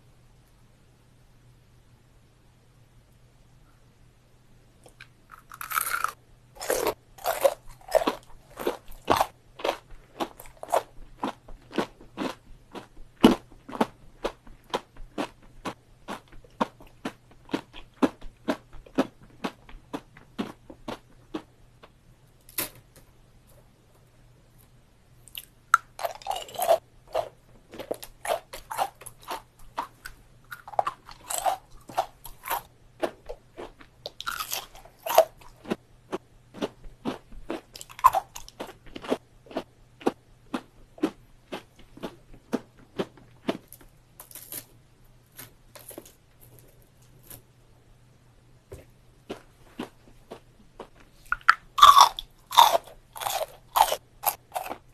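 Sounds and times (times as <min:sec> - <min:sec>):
candy crunching while chewing: 0:04.9 - 0:21.9, 0:25.2 - 0:35.8, 0:36.5 - 0:44.7, 0:49.3 - 0:54.9.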